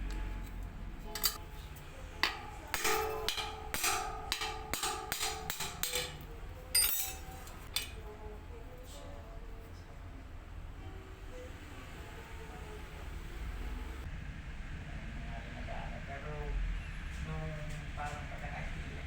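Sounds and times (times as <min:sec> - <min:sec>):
faint background music: 0:00.0 - 0:19.0
hammer knocking on metal: 0:02.2 - 0:07.2.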